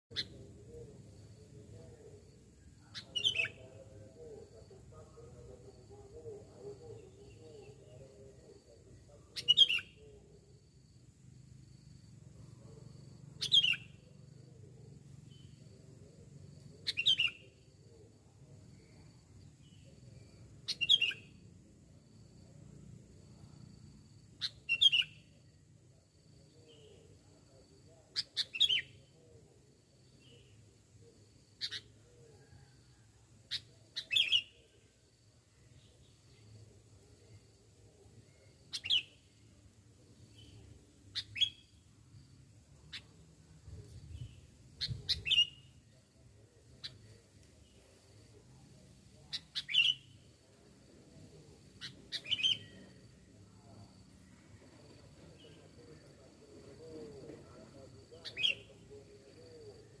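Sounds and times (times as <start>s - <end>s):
bird calling and chattering: 0.1s - 1.2s, 2.9s - 3.9s, 9.3s - 10.0s, 13.4s - 14.0s, 16.8s - 17.5s, 20.6s - 21.3s, 24.4s - 25.2s, 28.1s - 29.0s, 31.6s - 32.0s, 33.5s - 34.6s, 38.6s - 39.2s, 40.3s - 41.8s, 44.2s - 45.8s, 49.3s - 50.2s, 51.7s - 53.2s, 57.9s - 60.0s
bulbul chirping: 31.6s - 31.9s, 44.8s - 45.7s, 49.3s - 50.2s.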